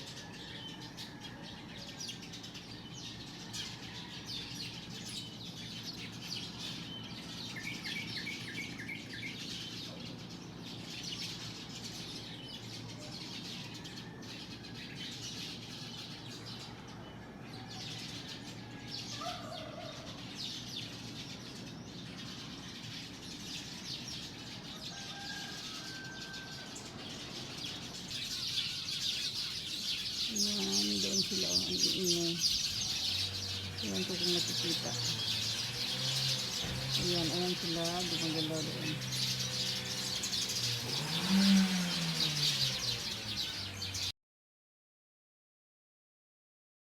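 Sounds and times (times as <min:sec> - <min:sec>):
small birds chirping: 0:00.0 - 0:44.1.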